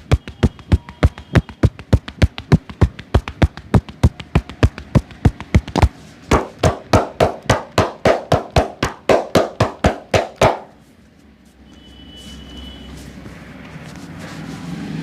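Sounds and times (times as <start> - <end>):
hand strikes of percussive massage: 0.0 - 10.8.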